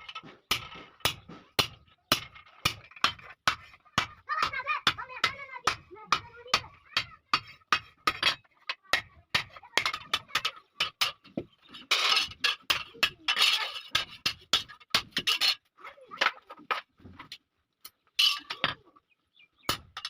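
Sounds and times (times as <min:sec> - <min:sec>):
metal scraping: 0:09.8 - 0:16.4.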